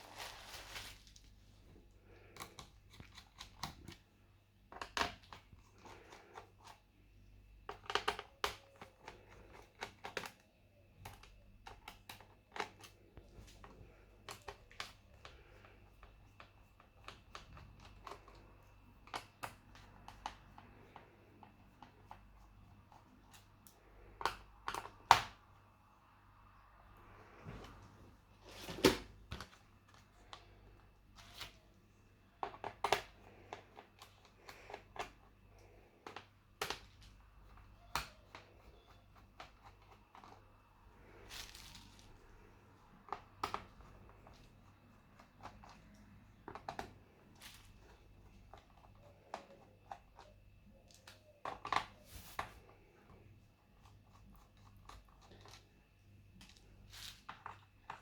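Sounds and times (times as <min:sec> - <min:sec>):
small tools and plastic parts clicking: 0:07.6 - 0:18.4.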